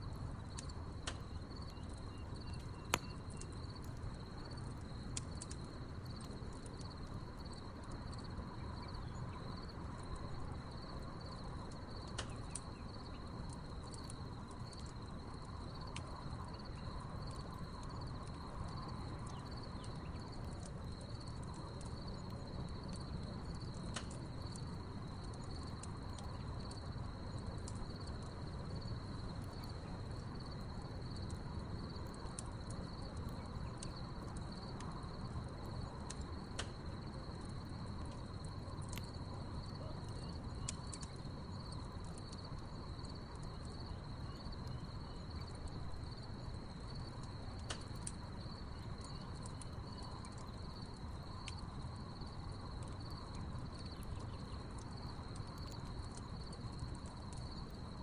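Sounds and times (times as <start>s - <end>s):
burning logs popping: 0.0s - 58.0s
crickets trilling: 0.0s - 58.0s
wood fire crackling: 0.0s - 58.0s.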